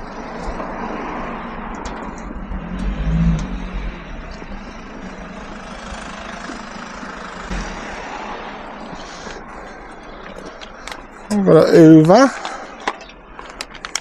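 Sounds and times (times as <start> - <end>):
truck engine and road noise: 0.0 - 14.0
low rumble: 1.6 - 10.2.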